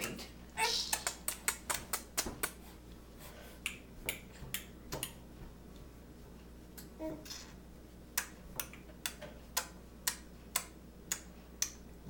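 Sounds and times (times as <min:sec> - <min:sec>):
baby making clicking noise: 0:00.8 - 0:02.6.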